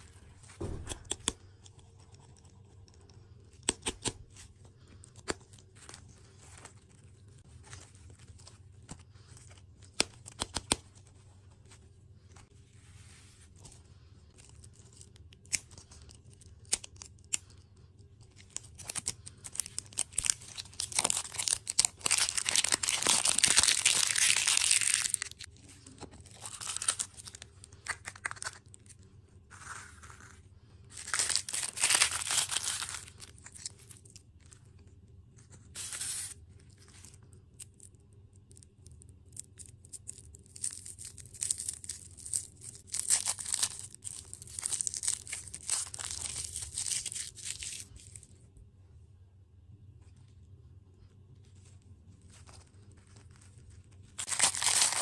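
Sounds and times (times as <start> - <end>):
plastic packaging tearing and crinkling: 18.3 - 25.5, 26.1 - 28.8, 30.9 - 34.3, 35.8 - 37.8, 39.2 - 48.3, 53.0 - 55.0.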